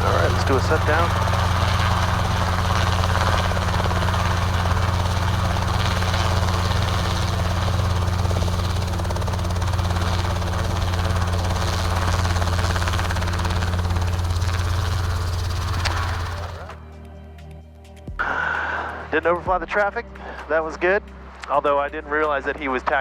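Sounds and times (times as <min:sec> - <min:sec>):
helicopter engine and rotor drone: 0:00.0 - 0:17.4.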